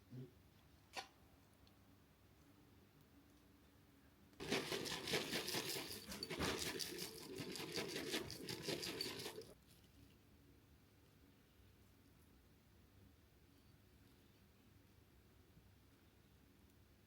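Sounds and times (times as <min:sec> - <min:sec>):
packaging crinkling and rustling: 0:04.4 - 0:09.5.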